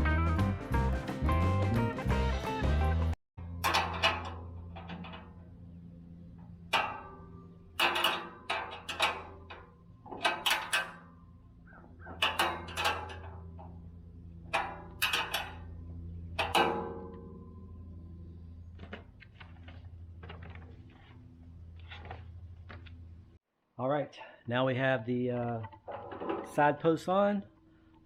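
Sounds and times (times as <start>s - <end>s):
metal parts clanking: 3.4s - 22.8s, 25.6s - 26.8s
steady low hum: 3.4s - 23.4s.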